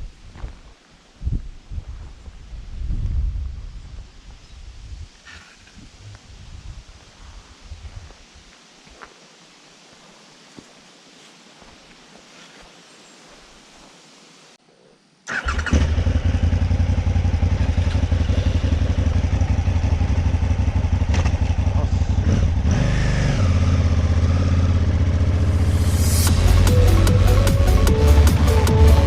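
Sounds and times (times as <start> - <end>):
motorcycle engine starting and running: 15.3 - 29.0.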